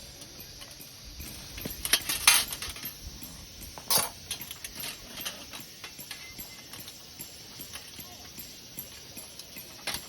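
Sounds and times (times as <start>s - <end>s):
metal plates clinking: 0.0s - 8.0s.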